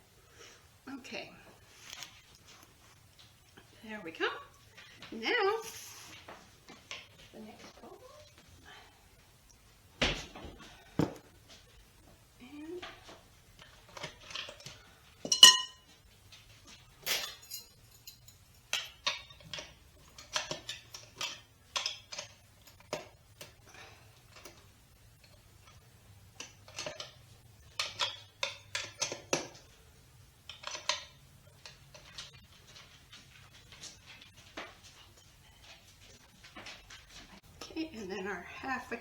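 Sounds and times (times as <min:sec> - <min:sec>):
utensil clinking against bowl: 0:14.0 - 0:15.9, 0:17.0 - 0:23.1.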